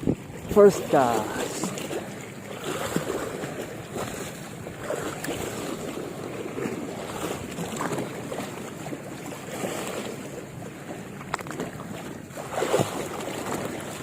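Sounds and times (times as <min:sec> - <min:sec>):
wind buffeting microphone: 0:00.0 - 0:08.6
sea water lapping on shore: 0:00.0 - 0:14.0.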